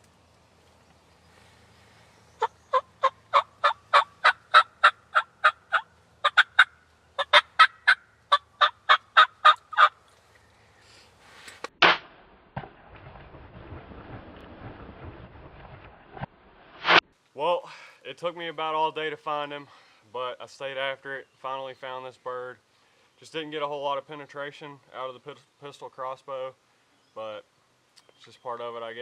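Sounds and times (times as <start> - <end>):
wild turkey yelping: 2.3 - 11.0.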